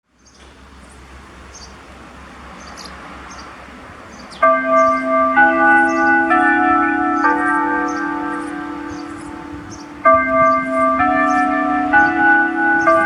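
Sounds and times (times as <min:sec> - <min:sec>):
electronic bell chime melody: 0:04.6 - 0:13.0.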